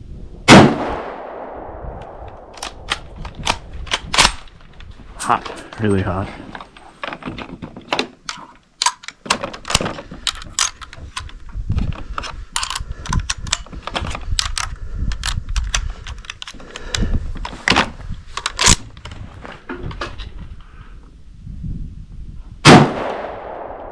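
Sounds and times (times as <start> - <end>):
metallic clicks of rifle reloading: 2.0 - 19.1.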